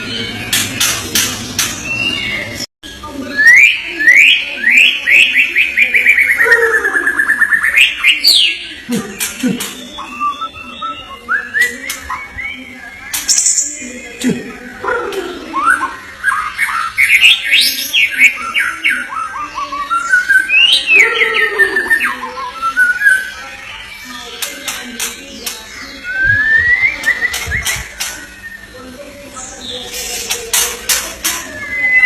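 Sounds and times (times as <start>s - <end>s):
bird singing harsh notes: 0.0s - 32.0s
bird singing whistled notes: 9.8s - 14.2s, 25.4s - 28.8s, 31.4s - 32.0s.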